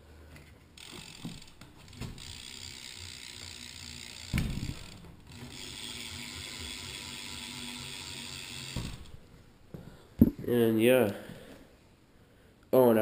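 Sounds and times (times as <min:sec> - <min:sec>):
bicycle hub freewheel clicking: 0:00.8 - 0:09.1.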